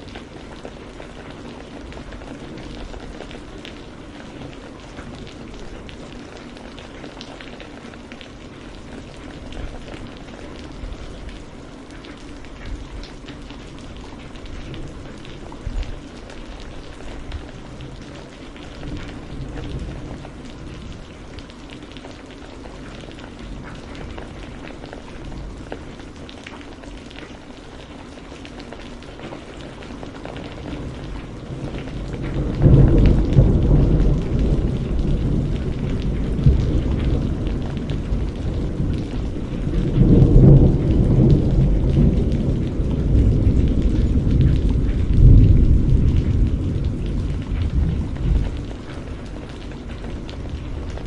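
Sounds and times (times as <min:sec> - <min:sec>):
steady rain falling: 0:00.0 - 0:51.0
rolling thunder rumble: 0:13.8 - 0:21.4, 0:30.5 - 0:51.0.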